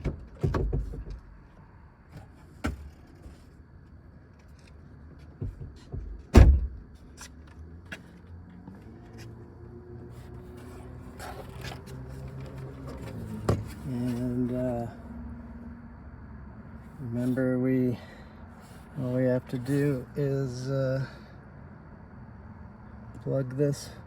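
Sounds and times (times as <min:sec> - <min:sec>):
loud thump: 0:06.3 - 0:06.8.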